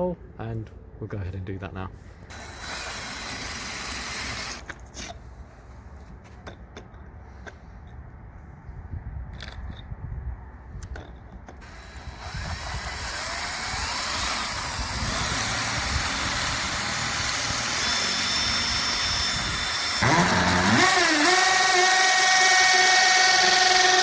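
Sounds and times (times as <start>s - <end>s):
power drill boring into wall: 2.3s - 5.1s, 11.6s - 24.0s.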